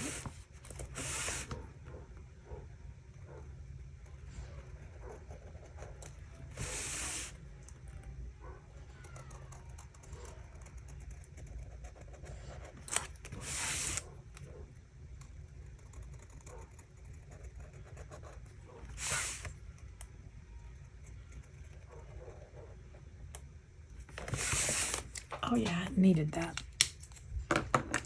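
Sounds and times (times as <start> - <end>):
marker scratching on paper: 0.0 - 1.6, 4.6 - 7.4, 9.7 - 14.1, 24.2 - 25.1
short hissing sounds: 6.6 - 7.4, 13.4 - 14.0, 19.0 - 19.5, 24.3 - 25.1.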